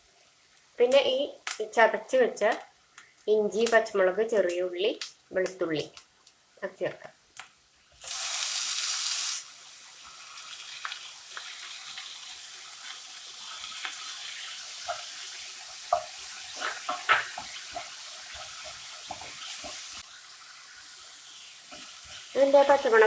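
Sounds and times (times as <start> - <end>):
food sizzling in hot oil: 7.4 - 23.0.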